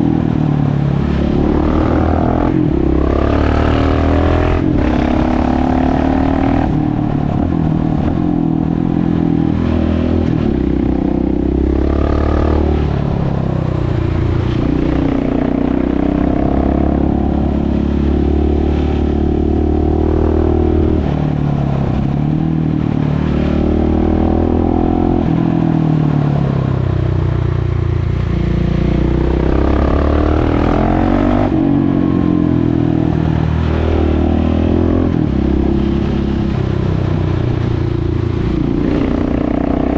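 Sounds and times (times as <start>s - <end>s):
motorcycle engine revving: 0.0s - 7.3s, 8.7s - 21.3s, 27.6s - 39.9s.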